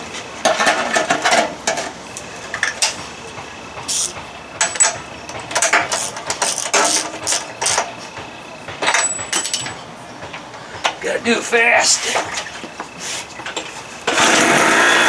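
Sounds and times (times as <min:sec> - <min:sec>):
ratchet wrench clicking: 0:03.9 - 0:07.9.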